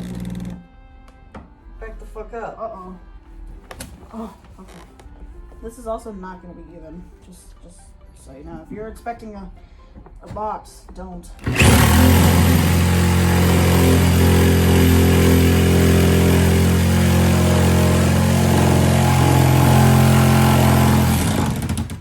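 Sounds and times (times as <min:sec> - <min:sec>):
electric jigsaw cutting: 0:00.0 - 0:00.6, 0:11.4 - 0:22.0.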